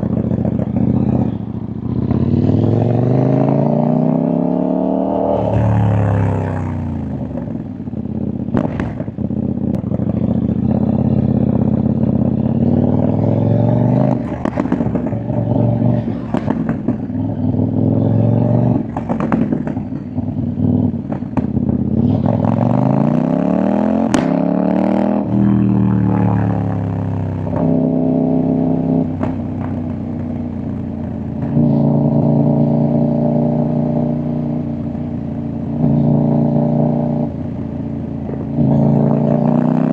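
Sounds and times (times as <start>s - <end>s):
motorcycle engine revving: 0.0s - 39.9s
exhaust pops and crackles: 8.5s - 10.0s, 14.2s - 15.5s, 16.1s - 17.3s, 18.7s - 21.9s, 24.1s - 24.4s, 29.1s - 31.7s.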